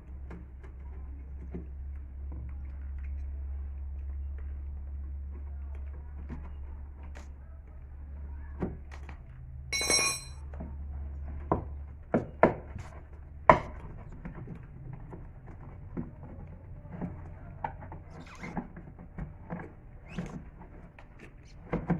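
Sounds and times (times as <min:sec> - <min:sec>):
sharp metal clanks: 0:09.8 - 0:10.3
metal tools knocking and clinking: 0:09.8 - 0:10.4.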